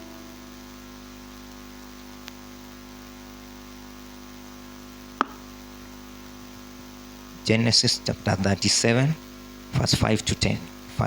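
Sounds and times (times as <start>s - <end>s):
faint hiss: 0.0s - 11.0s
steady electrical hum: 0.0s - 11.0s
faint click: 2.2s - 2.4s.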